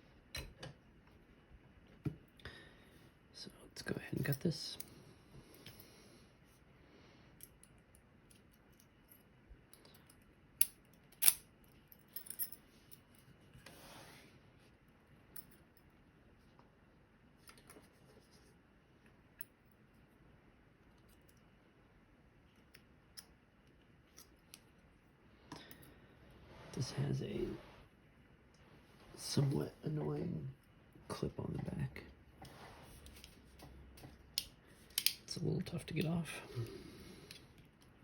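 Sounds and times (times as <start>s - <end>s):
small metallic clicks and clinks: 7.4s - 13.2s.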